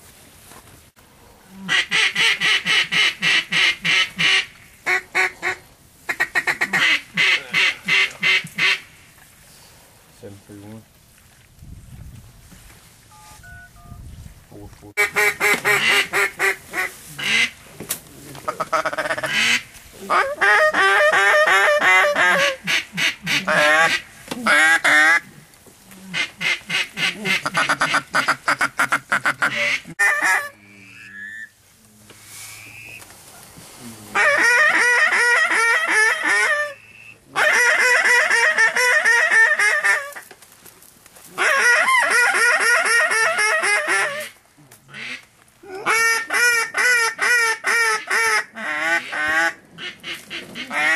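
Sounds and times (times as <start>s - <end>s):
waterfowl honking and quacking: 1.6s - 9.1s, 15.0s - 17.6s, 18.5s - 25.3s, 26.1s - 31.5s, 34.2s - 40.2s, 41.4s - 45.3s, 45.9s - 50.9s.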